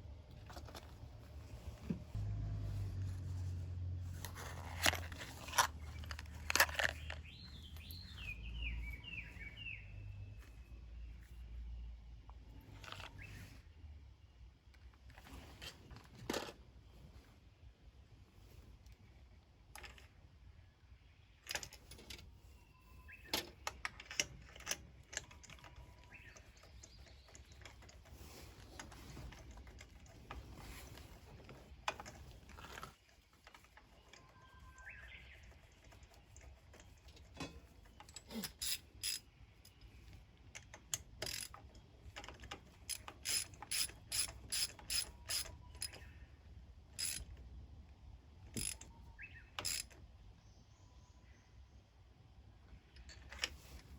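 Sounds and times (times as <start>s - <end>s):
ratchet wrench clicking: 38.3s - 39.2s, 40.9s - 41.6s, 42.8s - 46.0s, 47.0s - 47.3s, 48.6s - 48.9s, 49.6s - 50.0s.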